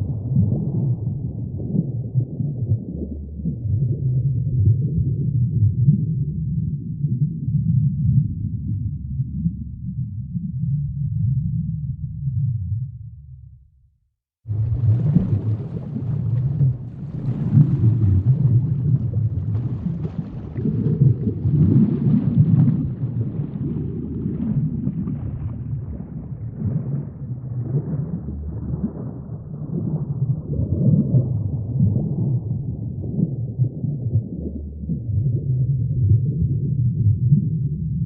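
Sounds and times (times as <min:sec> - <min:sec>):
faint crackle: 0:14.5 - 0:38.0
low uneven rumbling: 0:14.5 - 0:38.0.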